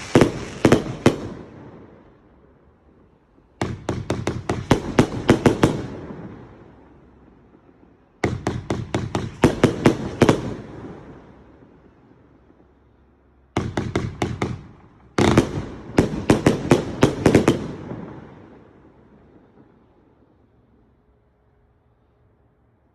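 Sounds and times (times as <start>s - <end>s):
echo of bangs: 0.0s - 1.9s, 3.6s - 6.7s, 7.5s - 11.5s
fireworks bangs: 0.0s - 2.3s, 3.1s - 12.8s, 13.5s - 20.4s.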